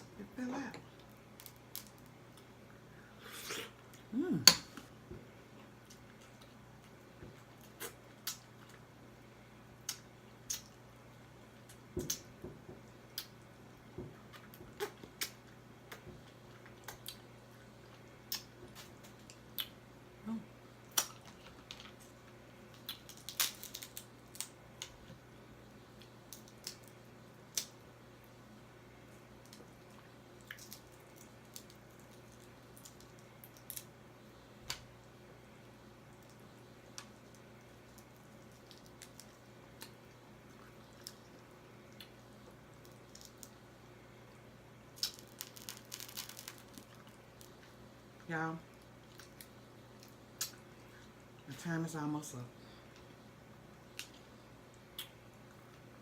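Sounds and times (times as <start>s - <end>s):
crab shells cracking: 1.4s - 2.2s, 22.7s - 25.0s, 45.0s - 47.6s
short voice sound: 4.1s - 4.6s.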